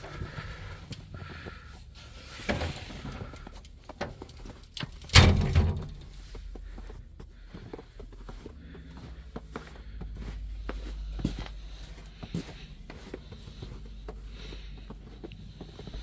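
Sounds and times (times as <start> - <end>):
small clicks and handling noise: 2.5 - 6.3.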